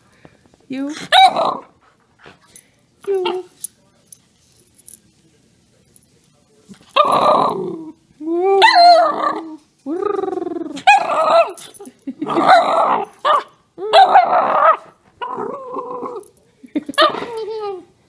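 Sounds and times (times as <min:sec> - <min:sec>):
dog growly barking and yowling: 0:01.1 - 0:01.7, 0:06.9 - 0:08.0, 0:08.6 - 0:16.3.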